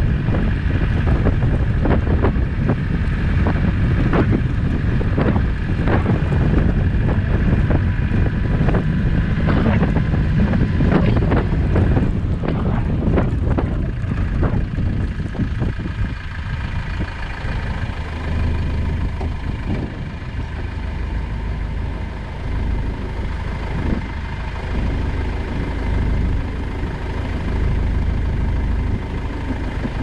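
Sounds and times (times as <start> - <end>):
vehicle engine and tyre noise: 0.0 - 30.0
wind buffeting the microphone: 0.0 - 30.0
vehicle knocks and rattles: 0.3 - 20.8.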